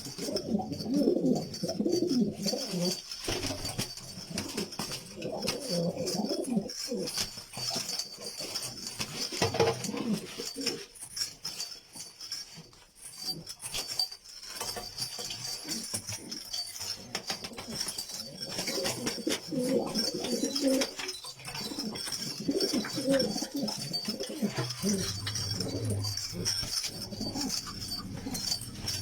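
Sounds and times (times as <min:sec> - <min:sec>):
pigeons cooing: 0:00.0 - 0:07.2, 0:09.6 - 0:10.9, 0:15.6 - 0:29.0.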